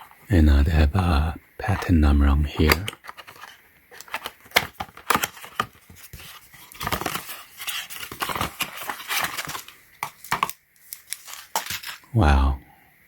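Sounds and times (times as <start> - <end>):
packaging rustling: 2.6 - 12.1.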